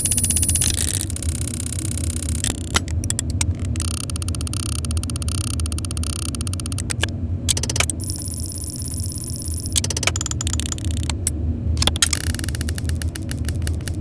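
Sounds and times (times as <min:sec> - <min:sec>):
steady low hum: 0:00.0 - 0:14.0
tiny metal gear ratcheting: 0:00.0 - 0:14.0.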